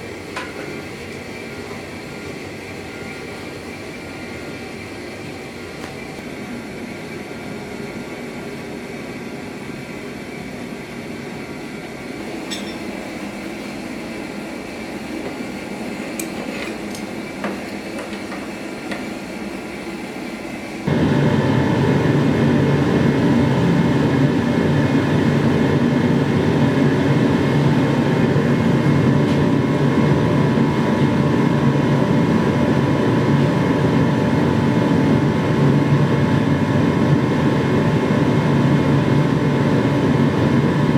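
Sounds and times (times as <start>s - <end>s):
machinery hissing and humming: 0.0s - 40.9s.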